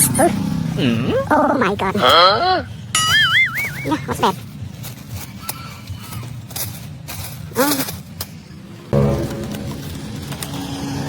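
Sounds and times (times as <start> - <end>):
background music with held tones: 9.0 - 10.6.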